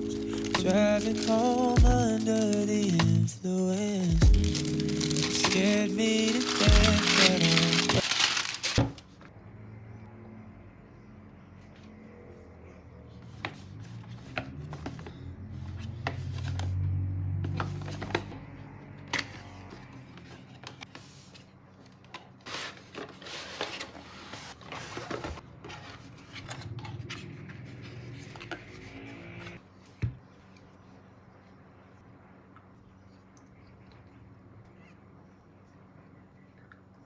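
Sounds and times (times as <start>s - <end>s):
packaging rubbing and rustling: 0.0s - 9.2s.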